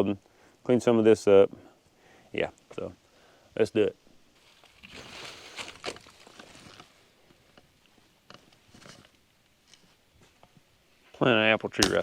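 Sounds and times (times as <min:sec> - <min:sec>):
faint scuffing and rustling: 0:04.3 - 0:11.4.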